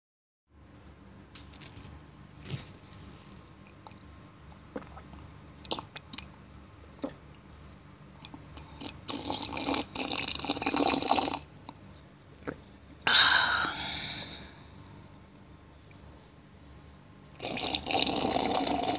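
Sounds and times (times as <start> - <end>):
person slurping coffee: 8.8 - 11.4, 17.4 - 18.9.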